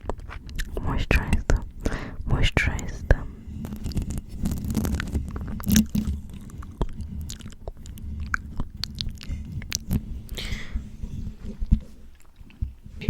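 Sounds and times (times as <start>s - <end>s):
lip smacks and mouth clicks: 0.0s - 12.9s
short breath: 1.8s - 2.2s, 10.2s - 11.2s.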